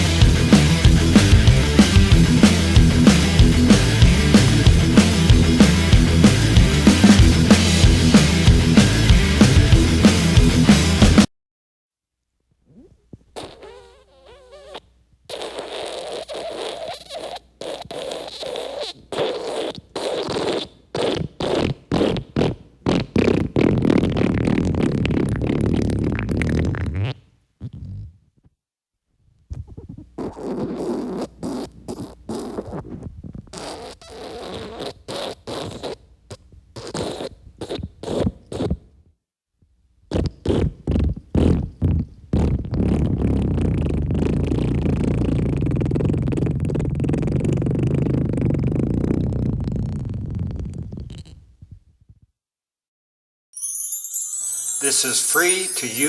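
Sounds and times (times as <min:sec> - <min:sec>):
wet fart sound effect: 0:12.7 - 0:28.2, 0:29.5 - 0:36.0, 0:36.8 - 0:38.9, 0:40.1 - 0:51.4.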